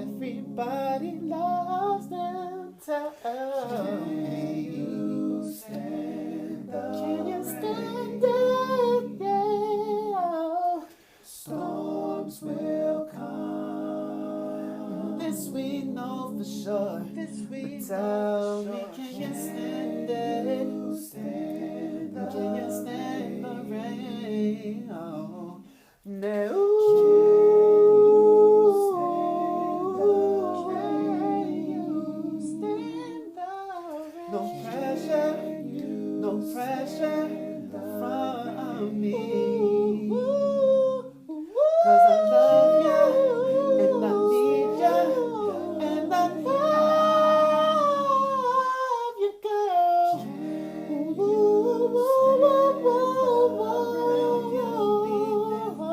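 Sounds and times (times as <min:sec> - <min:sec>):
low held vocal harmony: 0:00.0 - 0:55.9
person singing a cappella: 0:00.0 - 0:55.9.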